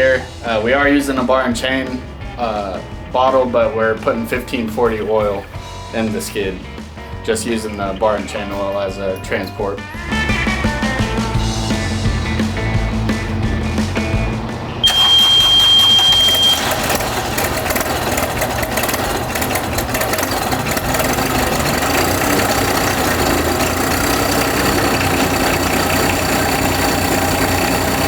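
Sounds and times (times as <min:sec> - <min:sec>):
engine idling: 0:00.0 - 0:28.0
high-pitched beep: 0:14.8 - 0:16.7.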